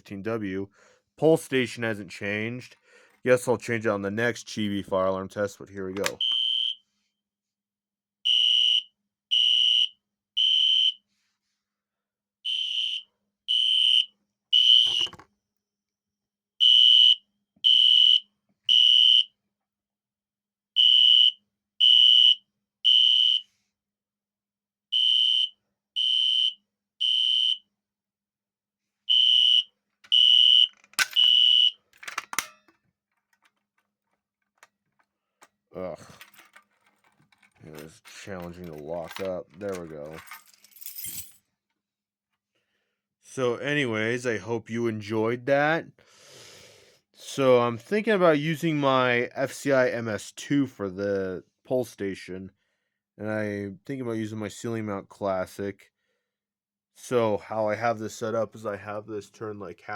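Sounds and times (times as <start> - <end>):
click: 6.0 - 6.2
fire alarm horn beeps: 6.2 - 6.8, 8.3 - 11.0, 12.4 - 15.1, 16.6 - 19.3, 20.8 - 23.5, 24.9 - 27.6, 29.1 - 31.8
clattering: 36.0 - 41.1.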